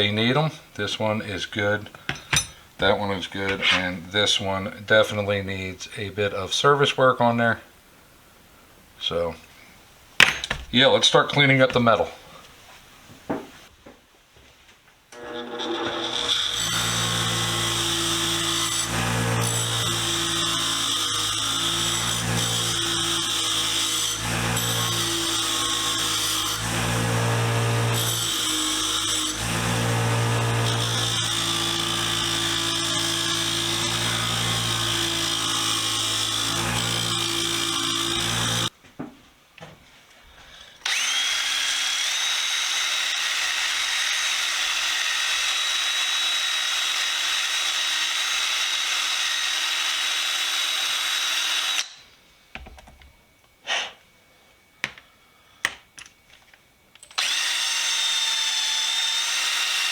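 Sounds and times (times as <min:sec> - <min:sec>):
belt sander whining: 0:15.1 - 0:38.7, 0:40.8 - 0:51.9, 0:57.0 - 0:59.9.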